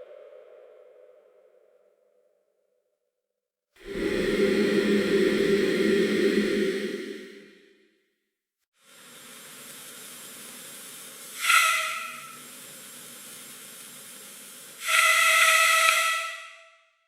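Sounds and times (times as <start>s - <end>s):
whistling gusts: 3.8s - 7.6s
heater blowing air hiss: 8.8s - 16.0s.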